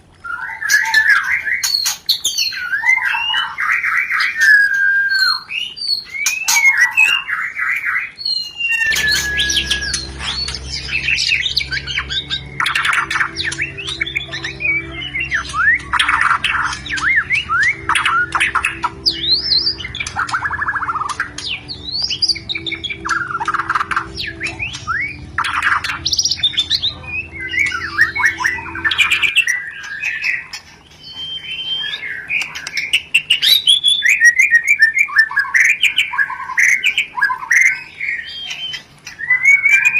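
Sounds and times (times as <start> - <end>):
songbird singing varied whistles: 0.2 - 39.9
low steady hum: 8.2 - 39.9.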